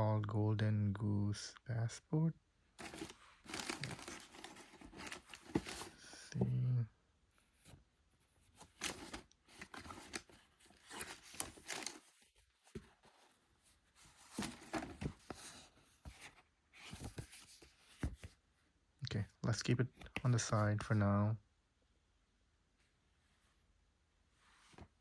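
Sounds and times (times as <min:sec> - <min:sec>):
paper and card rustling: 0:02.8 - 0:06.5, 0:08.4 - 0:18.4.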